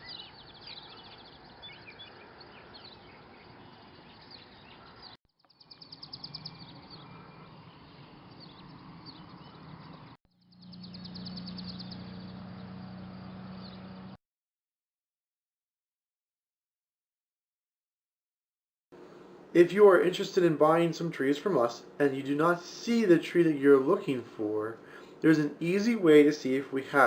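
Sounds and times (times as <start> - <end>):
outdoor background noise: 0.0 - 14.2, 19.0 - 27.0
songbirds singing: 0.0 - 14.2, 19.0 - 27.0
steady low hum: 19.0 - 27.0.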